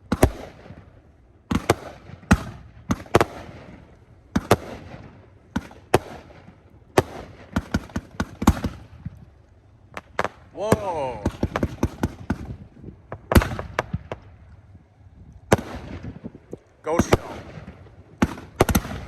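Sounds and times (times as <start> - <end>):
fireworks bangs with echo: 0.0 - 9.2, 9.9 - 14.4, 15.5 - 19.0.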